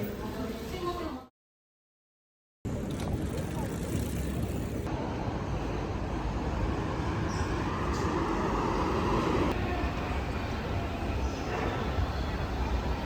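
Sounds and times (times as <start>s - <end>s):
moving vehicle rumble: 2.7s - 13.0s.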